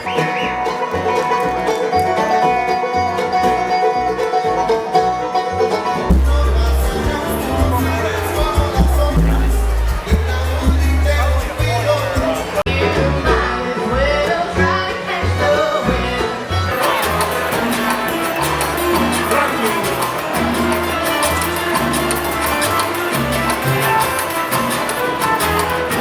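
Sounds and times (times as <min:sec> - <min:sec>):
salsa dance music: 0:00.0 - 0:26.0
walking bass line: 0:00.0 - 0:26.0
fast percussion: 0:06.1 - 0:12.6, 0:16.7 - 0:26.0.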